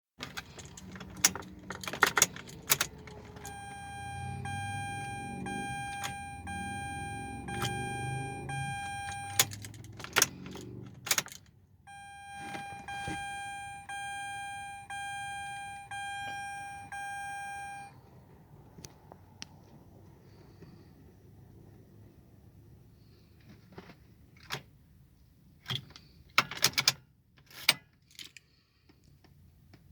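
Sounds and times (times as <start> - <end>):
car keys jangling: 0.2 - 17.9
car warning chime dinging: 2.7 - 9.6, 11.9 - 17.9.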